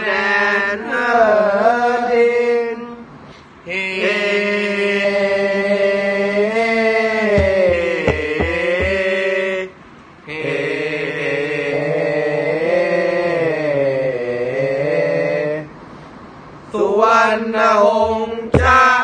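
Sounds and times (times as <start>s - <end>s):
group chanting held notes: 3.7s - 9.7s, 10.3s - 15.7s, 16.8s - 19.0s
low thuds: 7.4s - 9.1s, 18.0s - 19.0s.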